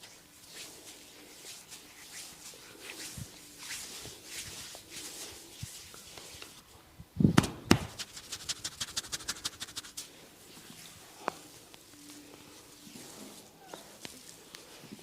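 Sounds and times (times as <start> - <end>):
scratching rustle in hair: 0.0 - 6.7, 7.8 - 15.0
sharp hand strikes: 7.3 - 8.0.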